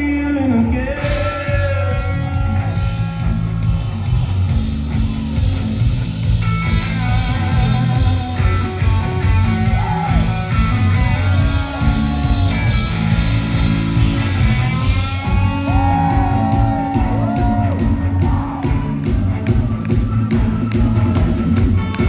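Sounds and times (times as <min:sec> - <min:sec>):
electric guitar: 0:00.0 - 0:22.0
rock band playing: 0:00.1 - 0:22.0.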